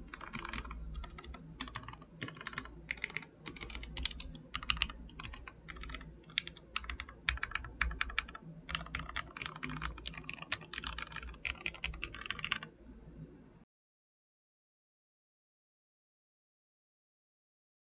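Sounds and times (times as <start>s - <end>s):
mechanical keyboard typing: 0.0s - 12.7s.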